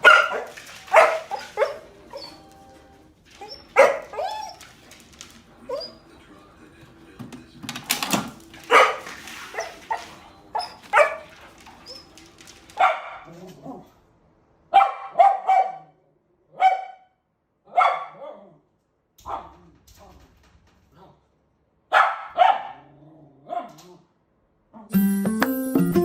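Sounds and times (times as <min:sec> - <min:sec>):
dog barking: 0:00.0 - 0:02.4, 0:03.4 - 0:04.6, 0:08.6 - 0:11.6, 0:12.8 - 0:13.9, 0:14.7 - 0:18.6, 0:19.2 - 0:19.6, 0:21.9 - 0:24.1.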